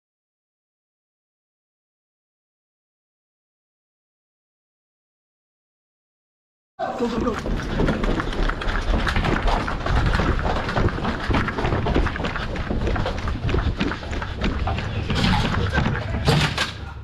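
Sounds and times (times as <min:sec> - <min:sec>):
rapid footfalls: 0:06.8 - 0:16.6
gear and clothing rattling: 0:06.9 - 0:16.8.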